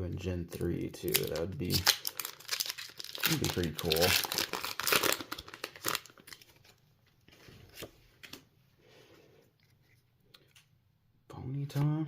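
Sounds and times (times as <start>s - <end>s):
cards rustling and clicking: 1.0s - 8.5s
foil wrapper tearing and crinkling: 1.1s - 6.6s.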